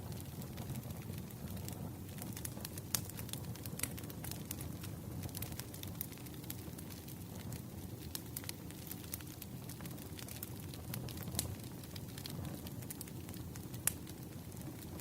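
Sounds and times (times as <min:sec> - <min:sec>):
firewood popping and snapping: 0:05.2 - 0:15.0.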